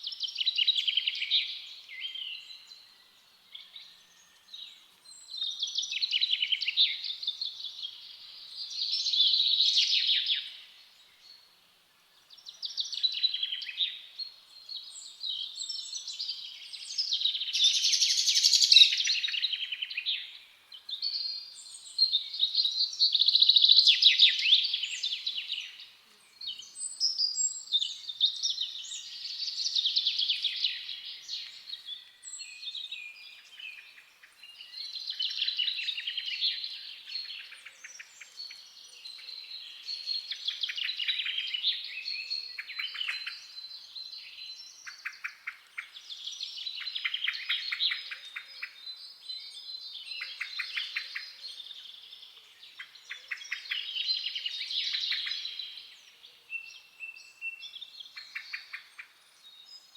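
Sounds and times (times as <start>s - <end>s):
songbirds trilling and chirping: 0.0s - 59.9s.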